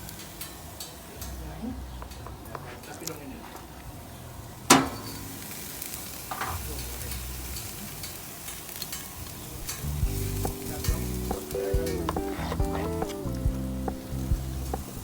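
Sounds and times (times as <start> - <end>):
meat sizzling on a grill: 0.0 - 1.5, 4.5 - 15.0
music with a steady beat: 9.8 - 15.0.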